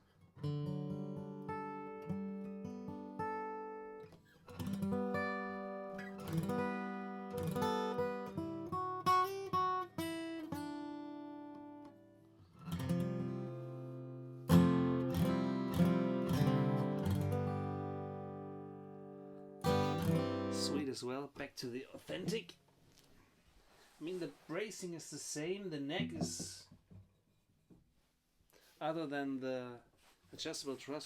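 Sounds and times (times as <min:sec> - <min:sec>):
acoustic guitar picking and strumming: 0:00.2 - 0:21.0, 0:22.0 - 0:22.6.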